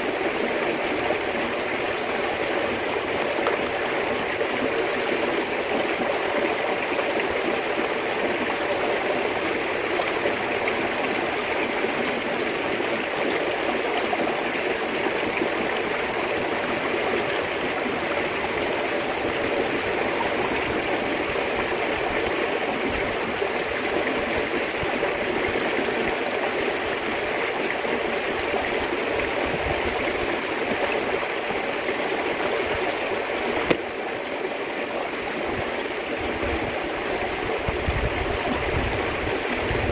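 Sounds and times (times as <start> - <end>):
running water rushing: 0.0 - 39.9.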